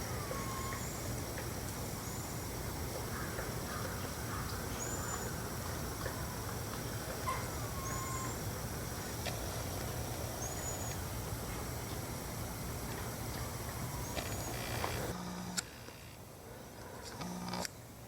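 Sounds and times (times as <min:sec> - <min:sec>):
steady high-pitched tone: 0:00.0 - 0:02.7
low background noise: 0:00.0 - 0:18.0
animal chirping: 0:07.3 - 0:08.4.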